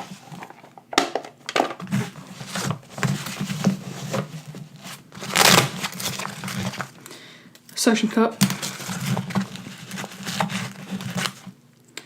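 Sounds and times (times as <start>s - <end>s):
rustling scrape: 1.8s - 7.0s, 8.4s - 11.6s.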